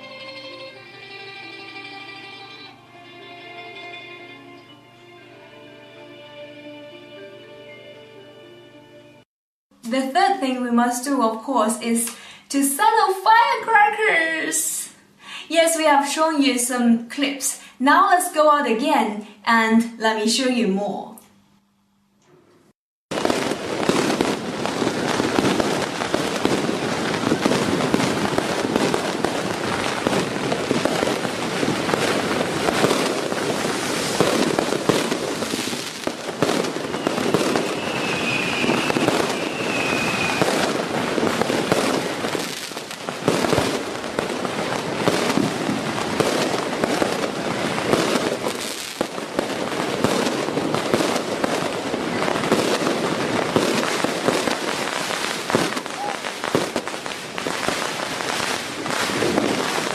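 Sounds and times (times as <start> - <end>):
firecrackers cracking and banging: 23.1 - 59.9
high firework whistle: 23.2 - 43.9, 53.6 - 56.9.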